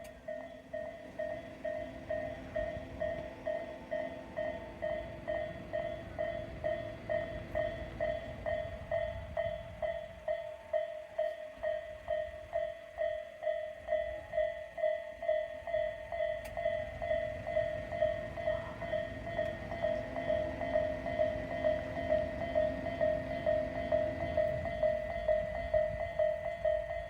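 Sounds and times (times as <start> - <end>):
level crossing alarm dinging: 0.0 - 27.0
train rumbling past: 0.0 - 27.0.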